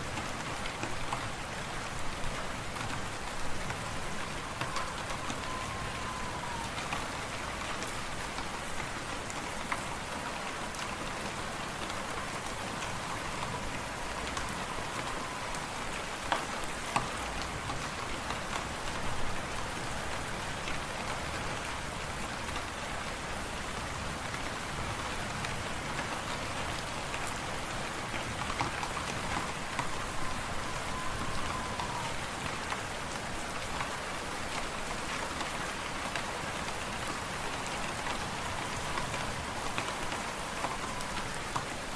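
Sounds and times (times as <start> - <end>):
whistle of wind: 2.8 - 7.8, 11.0 - 20.0, 26.6 - 33.6, 36.2 - 41.9.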